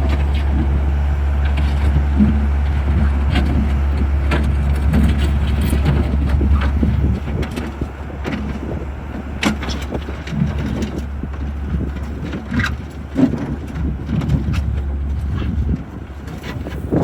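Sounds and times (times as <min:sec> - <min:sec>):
sharp clanks and knocks: 0:00.0 - 0:08.8
skid steer engine running: 0:00.0 - 0:17.0.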